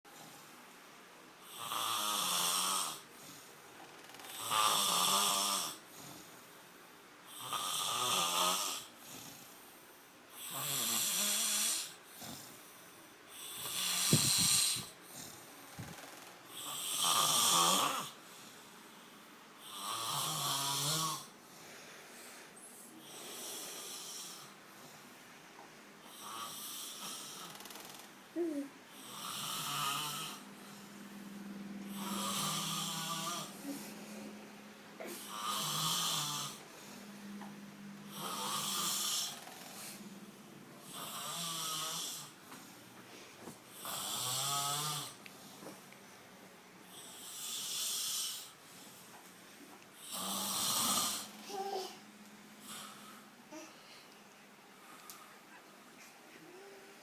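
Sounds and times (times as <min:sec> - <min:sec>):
person snoring loudly: 0:13.5 - 0:14.9, 0:28.4 - 0:30.5, 0:31.9 - 0:33.9, 0:35.0 - 0:36.6, 0:38.1 - 0:39.4, 0:50.0 - 0:51.9.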